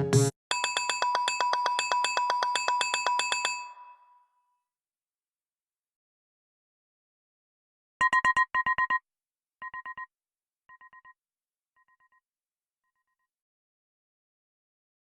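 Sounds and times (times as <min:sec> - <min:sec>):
electronic ringtone beeps: 0:08.0 - 0:09.0, 0:09.6 - 0:10.1, 0:10.7 - 0:11.2.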